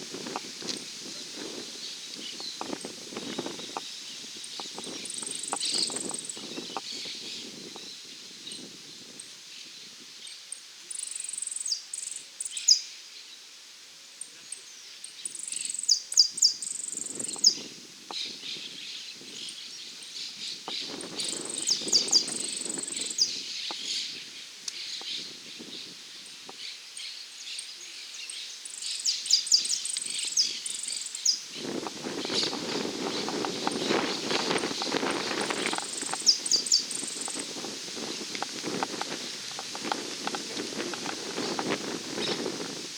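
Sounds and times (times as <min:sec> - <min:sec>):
finch chirping and trilling: 0:20.7 - 0:23.9, 0:32.3 - 0:37.4.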